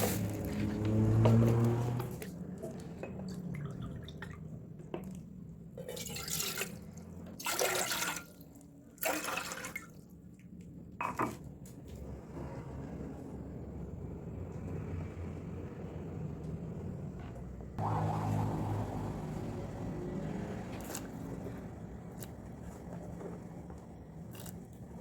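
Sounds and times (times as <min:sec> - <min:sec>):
water pouring and splashing: 0:05.8 - 0:10.0.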